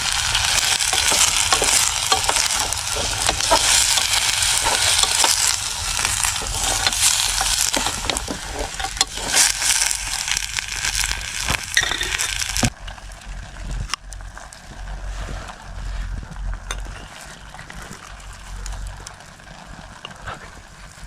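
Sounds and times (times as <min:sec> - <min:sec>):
stirring scrapes and clicks: 0:00.0 - 0:13.0
food sizzling in a pan: 0:00.0 - 0:21.0.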